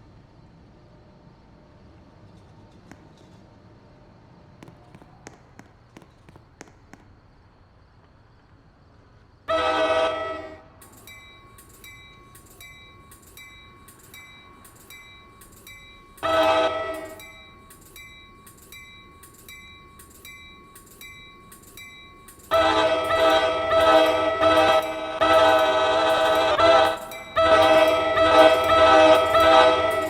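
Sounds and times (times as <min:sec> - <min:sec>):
locomotive air horn blasts: 0:09.5 - 0:10.9, 0:16.2 - 0:17.5, 0:22.5 - 0:30.0
crossing bell dinging: 0:10.7 - 0:30.0.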